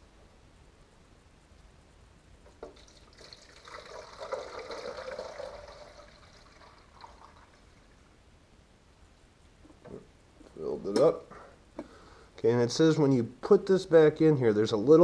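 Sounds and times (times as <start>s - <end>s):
water pouring into reservoir: 2.6s - 8.0s.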